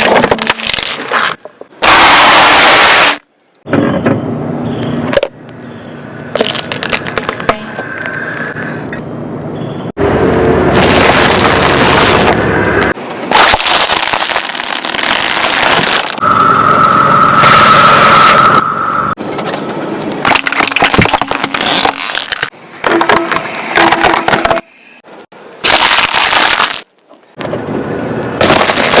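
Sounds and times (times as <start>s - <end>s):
objects cracking under car: 6.4s - 8.5s, 19.3s - 24.7s, 28.4s - 29.0s.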